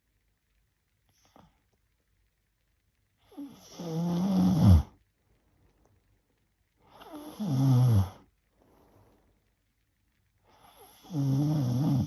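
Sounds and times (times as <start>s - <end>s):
woman snoring: 3.3s - 5.0s, 6.9s - 8.3s, 10.6s - 12.0s.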